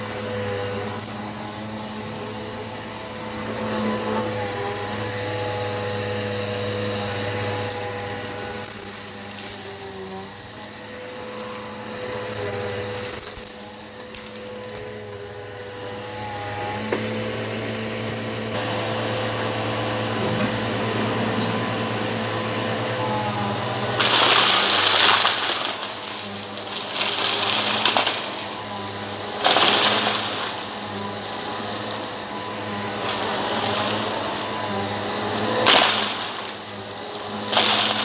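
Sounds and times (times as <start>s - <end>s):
vacuum cleaner motor hum: 0.0s - 38.0s
debris rushing into vacuum: 23.9s - 38.0s.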